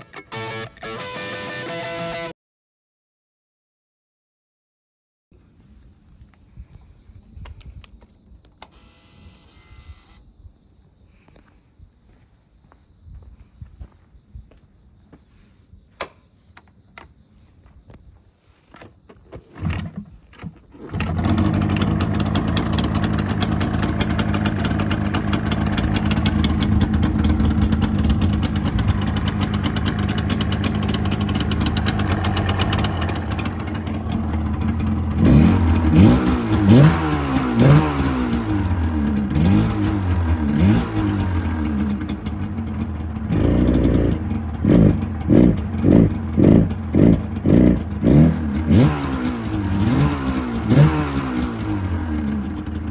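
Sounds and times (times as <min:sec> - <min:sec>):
motorcycle engine revving: 0:20.7 - 0:52.9.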